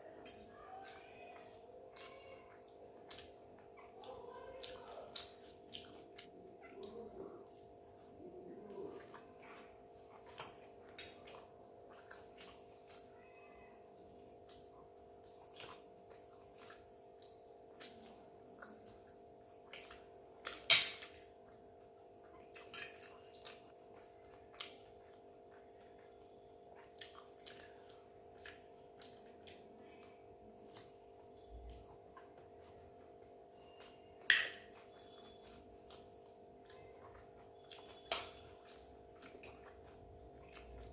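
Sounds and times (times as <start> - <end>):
dishes and cutlery clinking: 10.1 - 11.2, 20.5 - 21.3, 22.6 - 23.6, 33.5 - 35.4, 37.8 - 38.8.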